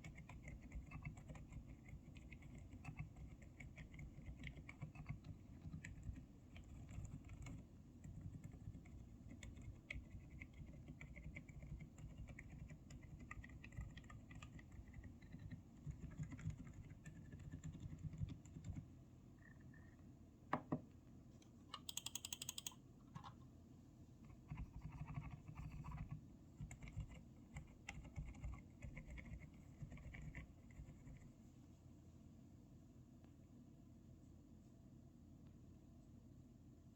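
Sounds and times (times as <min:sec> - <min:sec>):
sharp fast keyboard clicks: 0:00.0 - 0:18.9, 0:21.8 - 0:22.8, 0:24.3 - 0:31.2
quiet keyboard typing: 0:00.0 - 0:19.9, 0:21.8 - 0:23.4, 0:24.2 - 0:31.4.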